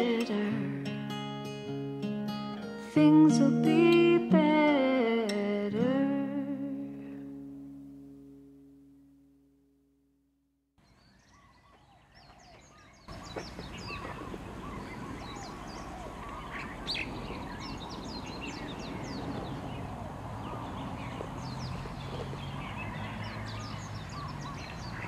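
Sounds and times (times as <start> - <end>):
birds chirping and calling: 10.8 - 25.0.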